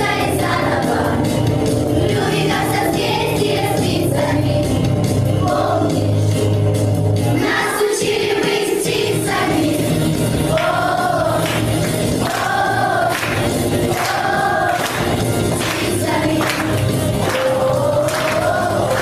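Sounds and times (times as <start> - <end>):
children singing in chorus: 0.0 - 1.2, 7.4 - 9.9, 10.5 - 19.0
backing track music: 0.0 - 19.0.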